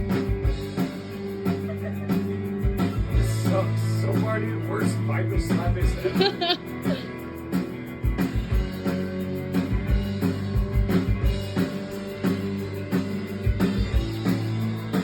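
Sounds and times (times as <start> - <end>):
rock band music: 0.0 - 15.0.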